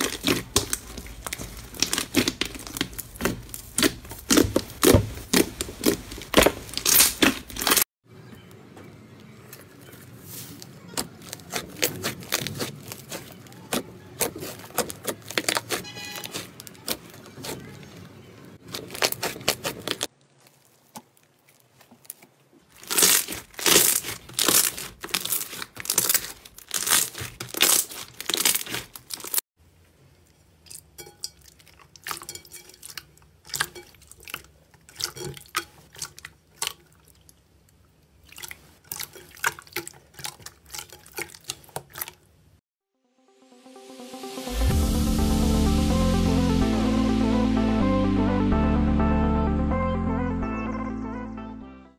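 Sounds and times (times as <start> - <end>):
slime squished by hand: 0.0 - 7.8, 10.3 - 17.8, 18.6 - 29.4.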